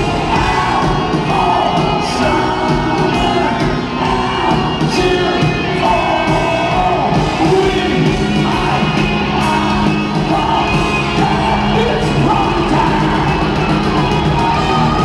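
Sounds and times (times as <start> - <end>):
hard rock band playing: 0.0 - 15.0
sung and shouted lead vocal: 0.0 - 15.0.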